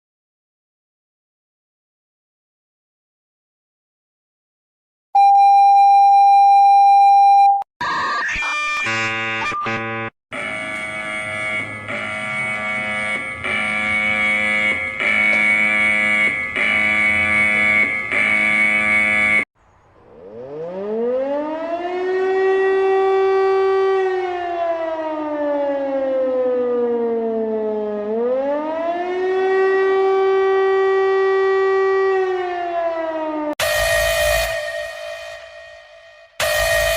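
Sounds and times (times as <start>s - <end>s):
steady multi-note alarm tone: 8.8s - 19.5s, 33.6s - 36.9s
civil defense siren wailing: 8.9s - 19.4s, 20.0s - 36.9s.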